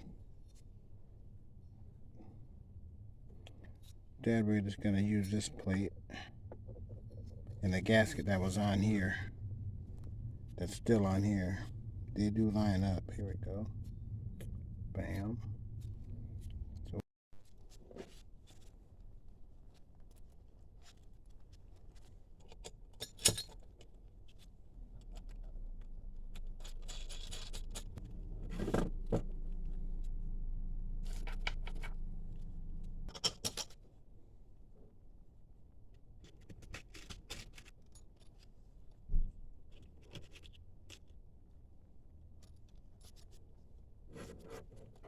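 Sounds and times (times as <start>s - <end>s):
low steady hum: 0.0s - 17.0s, 23.4s - 33.2s
tools and metal parts clinking: 22.6s - 23.8s, 26.3s - 28.0s.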